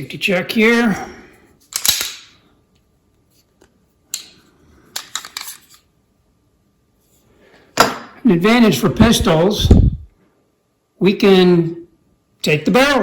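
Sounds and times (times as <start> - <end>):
pistol clicks and snaps: 1.7 - 2.4.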